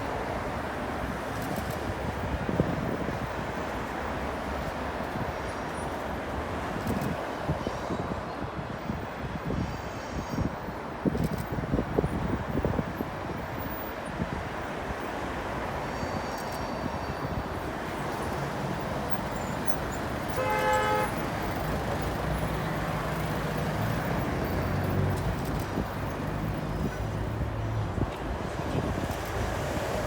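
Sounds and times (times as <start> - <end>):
horn toot: 20.3 - 21.5.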